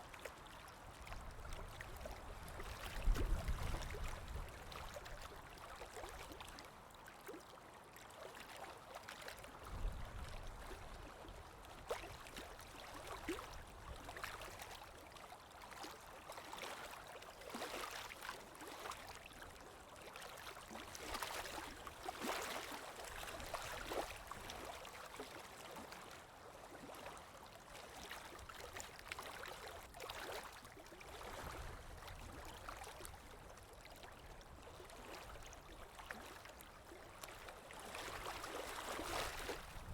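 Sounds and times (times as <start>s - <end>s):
small water splashes: 0.0s - 39.9s.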